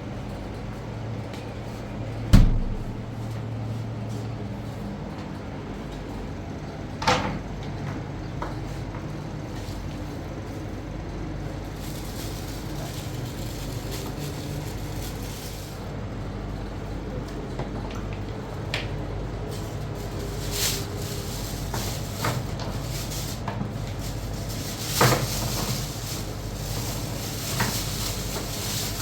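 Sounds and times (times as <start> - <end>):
sharp knock: 2.4 - 3.1
vehicle engine running: 2.4 - 3.8.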